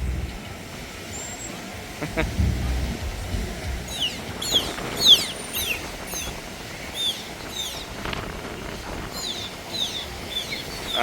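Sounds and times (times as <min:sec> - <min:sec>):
outdoor background: 0:00.0 - 0:11.0
birds whistled chirps: 0:03.9 - 0:07.9, 0:09.1 - 0:11.0.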